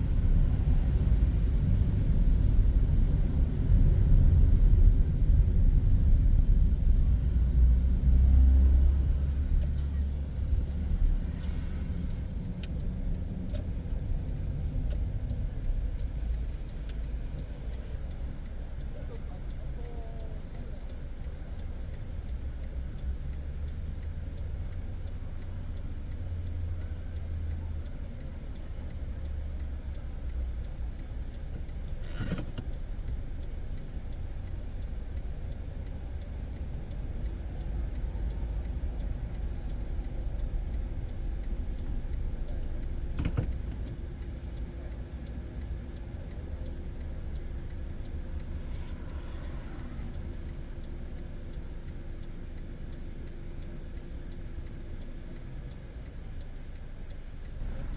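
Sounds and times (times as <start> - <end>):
car engine rumbling: 0.0 - 57.9
sharp clicks: 20.9 - 57.7.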